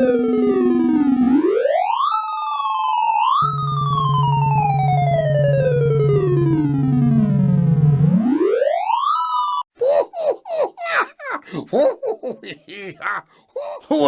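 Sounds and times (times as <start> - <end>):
rising synth sweep: 3.3 - 8.7
low steady tone: 3.4 - 7.3
person speaking: 9.8 - 14.0.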